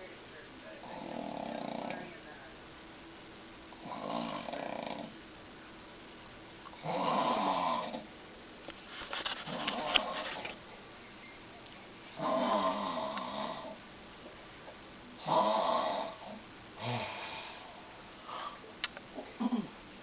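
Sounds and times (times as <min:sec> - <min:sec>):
woman snoring: 0:00.8 - 0:02.1, 0:03.8 - 0:05.1, 0:06.8 - 0:08.1, 0:12.2 - 0:13.8, 0:15.2 - 0:18.6.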